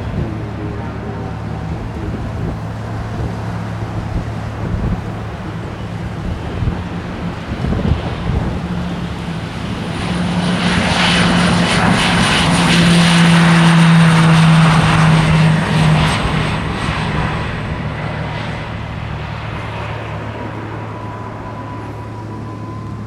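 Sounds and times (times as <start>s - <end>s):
propeller airplane engine drone: 0.0s - 23.0s
wind buffeting microphone: 0.0s - 23.0s.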